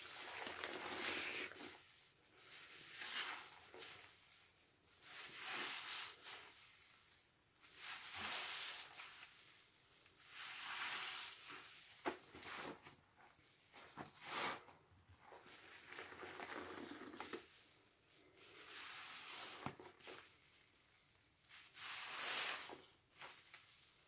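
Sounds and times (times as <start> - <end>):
sponge squelching: 0.0 - 9.6, 10.2 - 12.9, 13.5 - 24.0.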